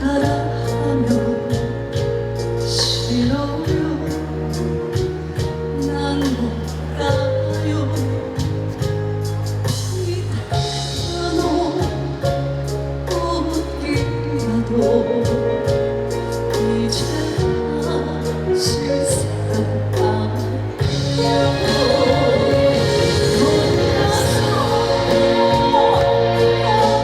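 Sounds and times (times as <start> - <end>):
woman singing: 0.0 - 9.0, 9.8 - 27.0
backing track with bass: 0.0 - 27.0
steady drum beat: 20.8 - 27.0.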